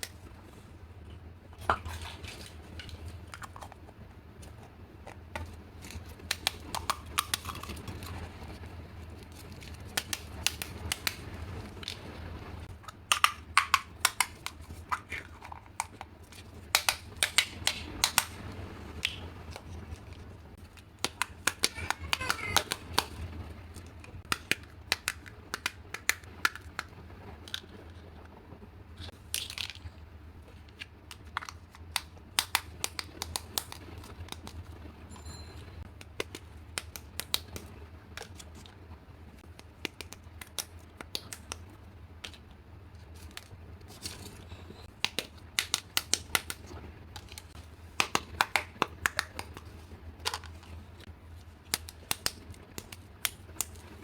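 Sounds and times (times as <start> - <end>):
plastic pieces clicking: 20.8 - 23.2, 30.8 - 34.6.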